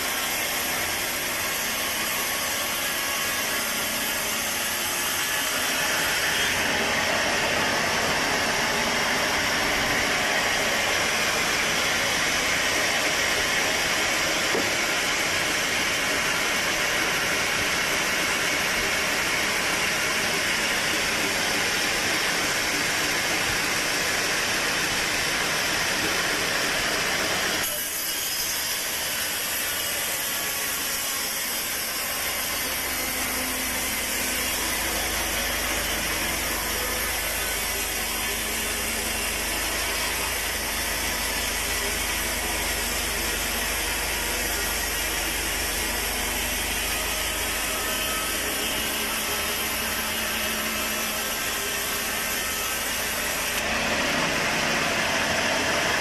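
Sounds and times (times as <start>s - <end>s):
sawmill saw cutting a log: 0.0s - 56.0s.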